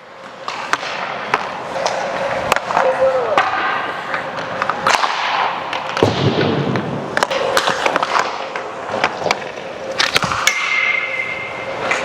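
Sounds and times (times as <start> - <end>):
skate blades scraping ice: 0.0 - 6.1, 7.1 - 12.0
stick hitting puck: 0.2 - 12.0.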